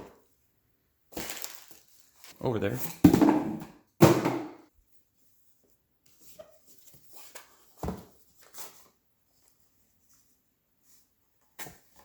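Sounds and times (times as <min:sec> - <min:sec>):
packaging handling noises: 0:01.1 - 0:02.7.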